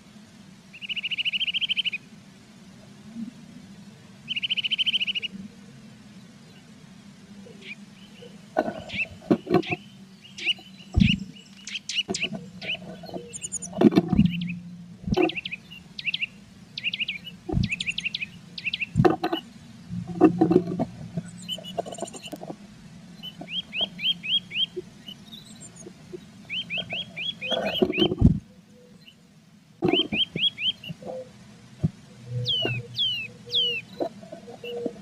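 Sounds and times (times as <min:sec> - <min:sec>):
high bird chirps: 0:07.6 - 0:19.5, 0:23.2 - 0:25.9, 0:26.5 - 0:28.2, 0:29.8 - 0:31.2, 0:32.3 - 0:34.9
knocks and scratches in nest box: 0:10.9 - 0:11.2, 0:20.1 - 0:22.5.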